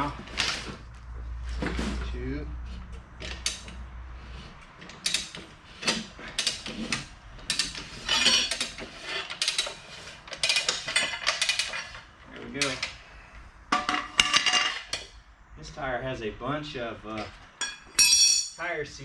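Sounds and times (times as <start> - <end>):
metallic clicks and scrapes: 1.6 - 15.2.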